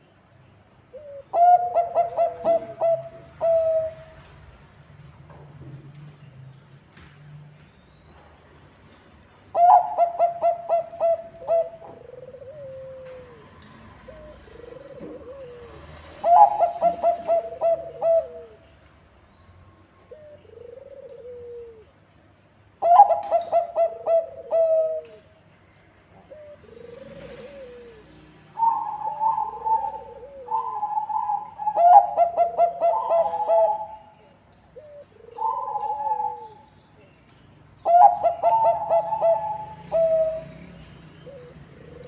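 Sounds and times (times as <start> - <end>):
doves cooing: 0.9 - 4.4, 9.5 - 18.8, 20.0 - 22.0, 22.8 - 25.4, 26.2 - 36.7, 37.8 - 42.0.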